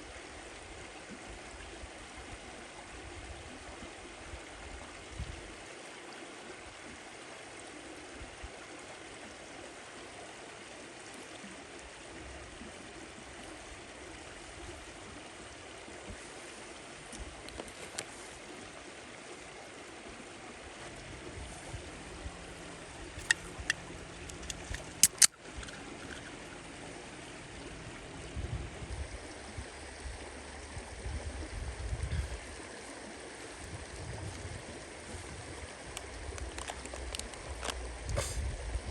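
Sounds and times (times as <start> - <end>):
running water: 0.0 - 38.9
sharp clicks: 23.2 - 25.4.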